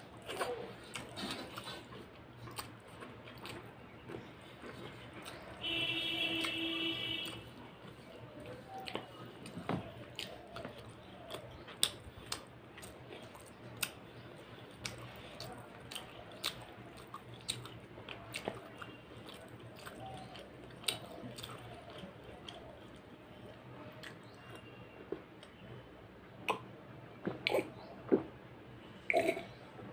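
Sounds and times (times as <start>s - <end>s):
close-up chewing: 0.0s - 25.6s.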